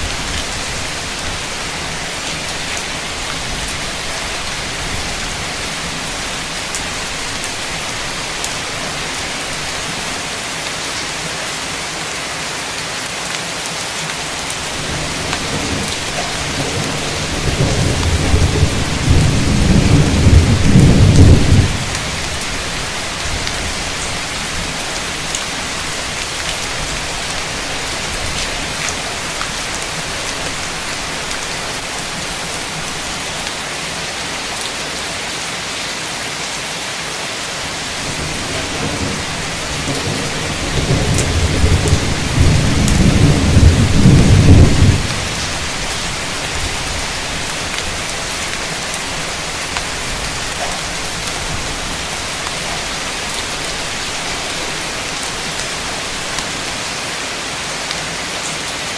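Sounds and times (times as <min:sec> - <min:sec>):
heavy rain: 0:00.0 - 0:58.9
thunder rolling: 0:14.7 - 0:22.4, 0:38.0 - 0:47.0.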